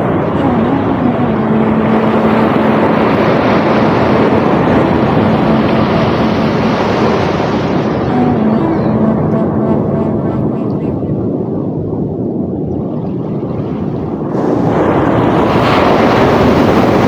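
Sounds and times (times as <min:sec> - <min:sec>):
sea water rushing: 0:00.0 - 0:11.8, 0:14.2 - 0:17.0
faint steady hum: 0:00.0 - 0:13.0
wind on microphone: 0:00.0 - 0:17.0.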